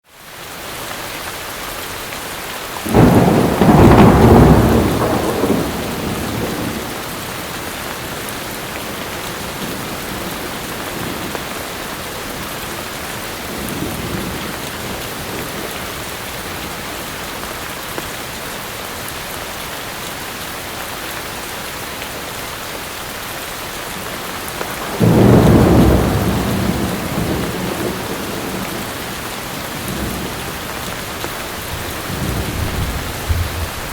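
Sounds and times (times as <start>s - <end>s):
heavy rain: 0.0s - 33.9s
thunder rumbling: 2.9s - 7.3s, 24.7s - 33.9s.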